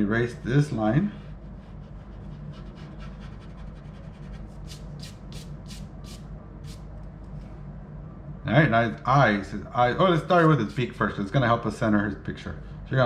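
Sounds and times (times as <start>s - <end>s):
steady low hum: 0.0s - 13.0s
eraser rubbing on paper: 1.2s - 6.2s.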